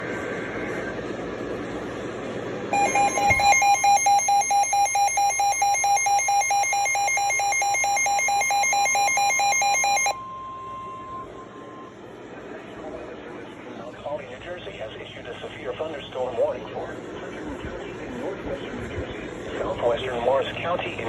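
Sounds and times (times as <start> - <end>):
two-tone electronic alarm: 2.8 - 12.0
steady warning tone: 2.8 - 12.2.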